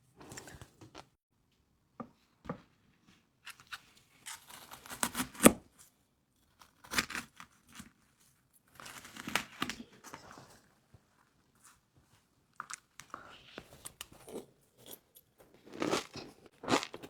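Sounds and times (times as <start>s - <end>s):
crispy noodles crunching: 15.4s - 17.0s.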